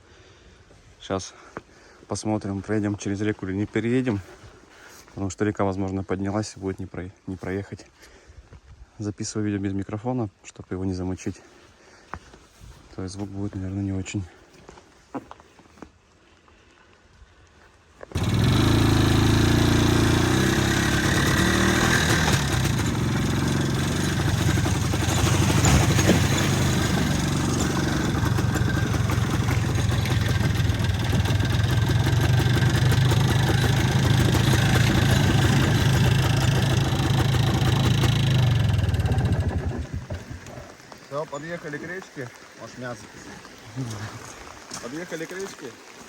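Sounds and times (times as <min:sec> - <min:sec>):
vehicle engine running: 0:18.2 - 0:40.2.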